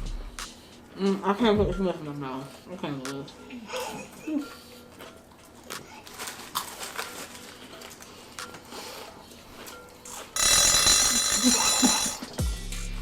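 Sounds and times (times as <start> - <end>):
timer alarm ringing: 10.1 - 12.4.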